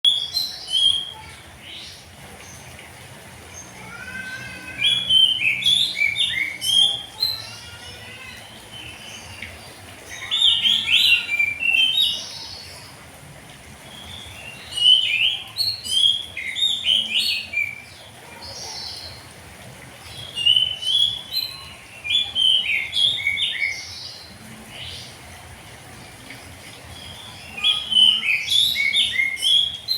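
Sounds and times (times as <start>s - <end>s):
bird singing whistled phrases: 4.8s - 7.4s, 20.4s - 23.8s, 27.2s - 29.9s.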